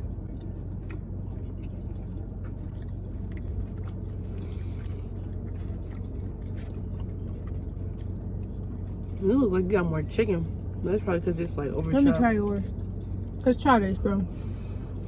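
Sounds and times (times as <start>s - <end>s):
people chewing food: 0.0s - 9.2s
car engine humming: 0.0s - 15.0s.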